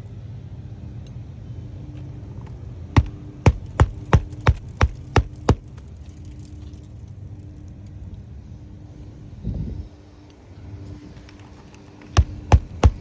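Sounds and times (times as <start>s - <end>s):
hammer striking nail: 3.0s - 5.8s, 12.2s - 13.0s.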